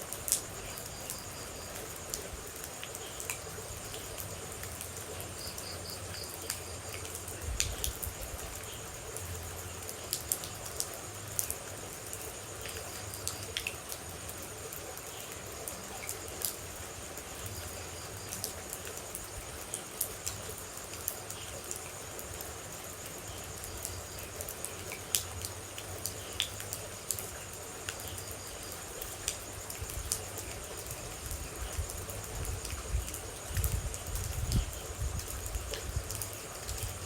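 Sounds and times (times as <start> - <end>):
rain hiss: 0.0 - 37.0
water droplets dripping: 23.2 - 30.5.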